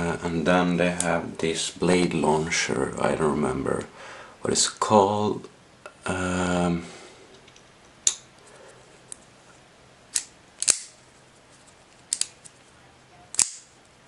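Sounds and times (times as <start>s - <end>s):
folding knife metallic clicks: 10.1s - 10.9s, 13.3s - 13.7s.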